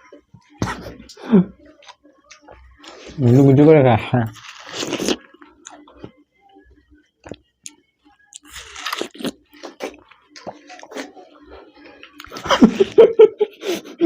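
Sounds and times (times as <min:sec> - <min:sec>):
watermelon crunching and munching: 0:04.2 - 0:06.0, 0:08.3 - 0:11.1.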